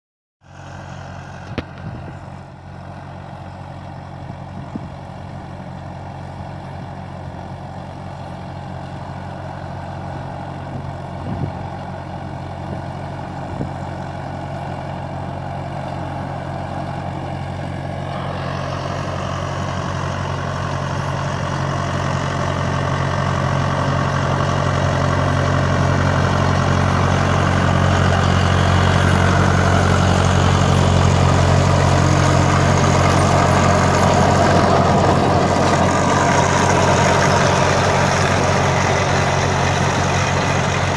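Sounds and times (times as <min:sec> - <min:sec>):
tractor engine running: 0:00.4 - 0:40.9
broad rushing noise: 0:28.7 - 0:40.9.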